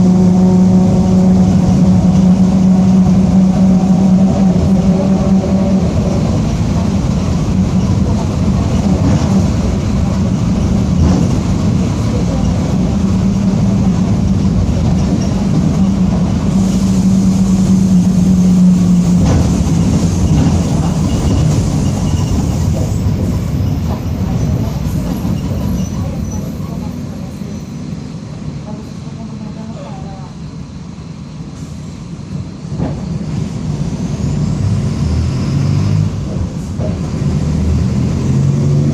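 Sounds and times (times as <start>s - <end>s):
low differential drone growling: 0.0s - 21.7s
bus rumbling from on board: 0.0s - 38.9s.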